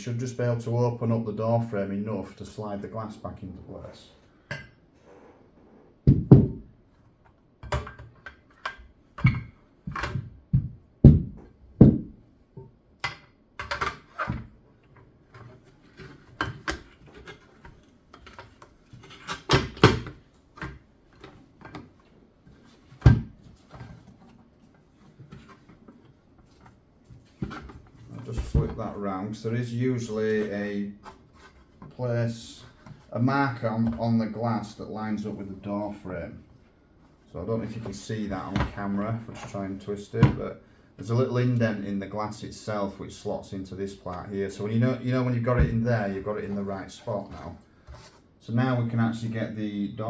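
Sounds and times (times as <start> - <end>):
hard plastic knocks and thuds: 6.0 - 6.7, 9.2 - 12.3.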